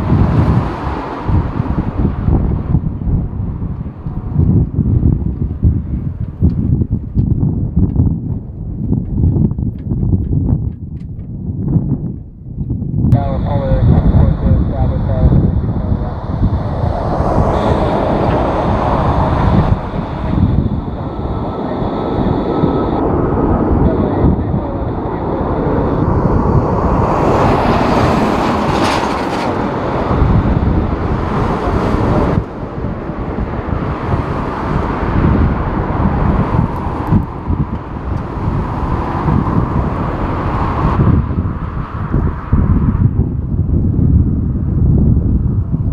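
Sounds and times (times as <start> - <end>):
wind buffeting microphone: 0.0 - 45.9
jet engines rumbling: 13.1 - 43.1
faint high whine: 13.2 - 27.7.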